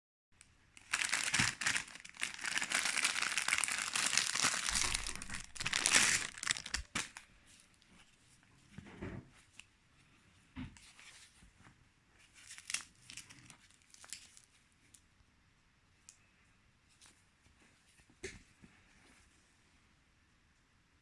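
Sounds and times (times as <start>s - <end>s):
plastic packaging crinkling: 0.7s - 7.3s, 12.4s - 14.5s.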